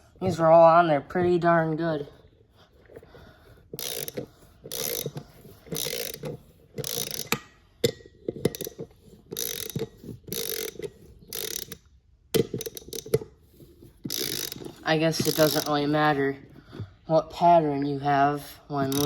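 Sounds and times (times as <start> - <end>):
socket ratchet clicking: 3.8 - 13.3, 14.0 - 15.8.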